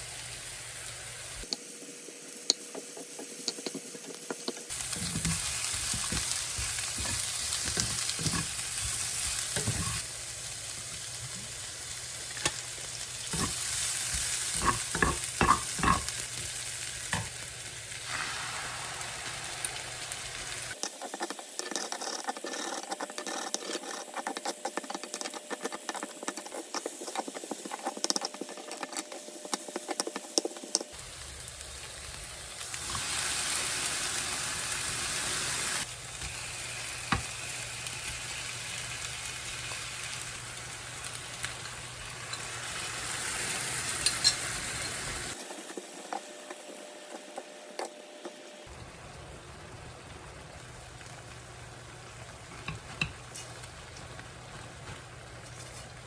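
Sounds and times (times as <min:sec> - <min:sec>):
food sizzling in frying pan: 0:00.0 - 0:29.9, 0:30.9 - 0:56.0.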